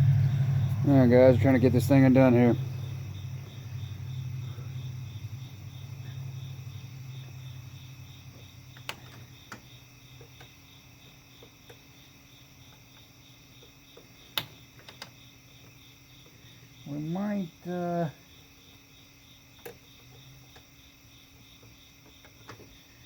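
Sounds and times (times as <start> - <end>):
low hum: 0.0 - 10.2
cricket chirping: 0.0 - 23.0.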